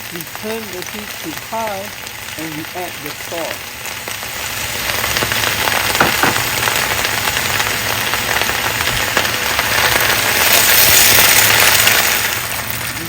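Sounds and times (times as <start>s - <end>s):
food sizzling in a wok: 0.0s - 13.0s.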